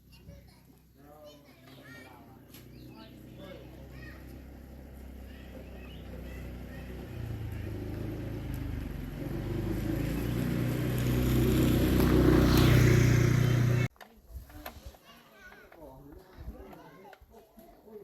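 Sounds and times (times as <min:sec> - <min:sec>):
tiller engine running: 0:02.6 - 0:13.9.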